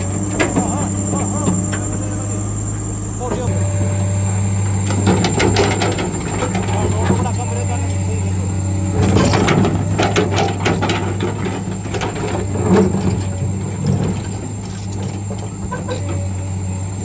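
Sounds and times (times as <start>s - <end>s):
diesel engine running: 0.0s - 17.0s
sharp knocks and clatter: 4.7s - 8.0s, 8.9s - 16.2s.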